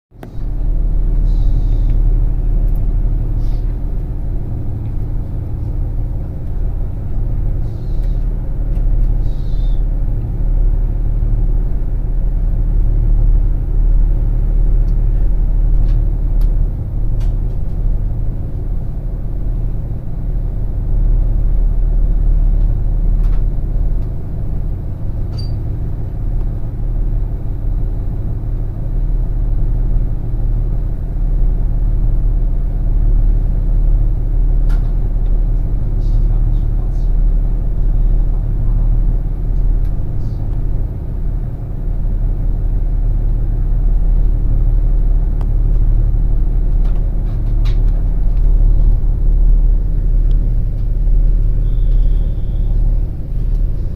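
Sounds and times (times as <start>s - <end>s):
diesel railcar rumbling: 0.1s - 53.9s
faint high squeaks: 25.3s - 25.6s, 51.6s - 52.8s.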